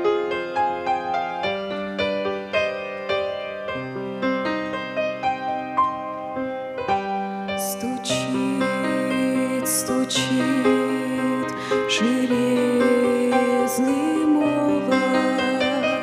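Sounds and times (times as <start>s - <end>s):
slow instrumental hymn melody: 0.0s - 16.0s.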